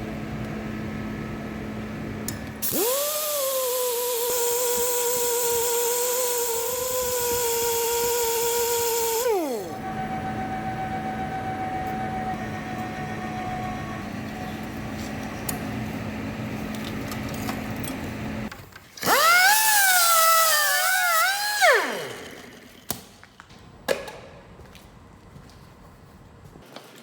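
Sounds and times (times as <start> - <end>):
steady machine hum: 0.0 - 18.5
power tool motor whirring: 2.6 - 15.4, 19.0 - 22.9.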